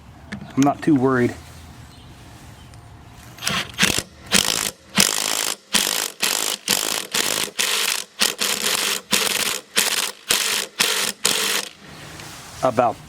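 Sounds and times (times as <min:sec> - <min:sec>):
ratchet wrench rasping: 0:03.4 - 0:11.8.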